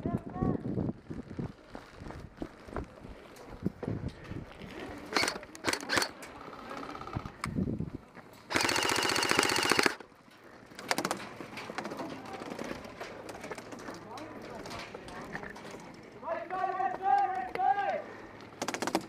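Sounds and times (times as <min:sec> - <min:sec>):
airsoft rifle automatic bursts: 0:05.1 - 0:07.1, 0:08.5 - 0:10.0, 0:18.6 - 0:19.0.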